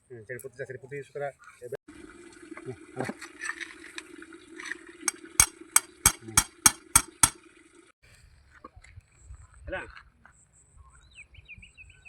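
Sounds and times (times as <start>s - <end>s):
sharp knocks: 5.1s - 7.4s.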